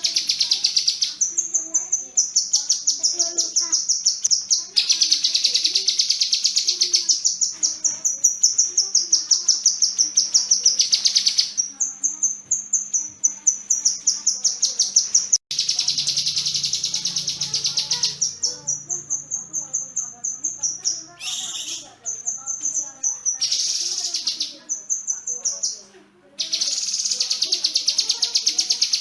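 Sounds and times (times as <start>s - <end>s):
songbird singing rapid high notes: 0.0s - 25.8s, 26.4s - 29.0s.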